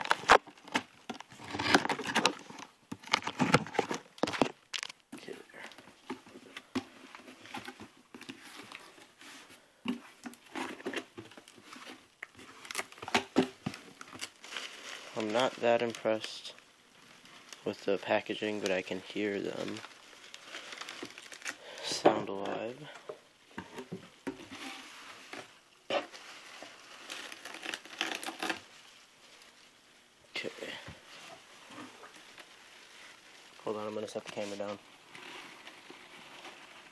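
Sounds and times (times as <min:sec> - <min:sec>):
tapping scratching and rustling package: 0:00.0 - 0:29.5.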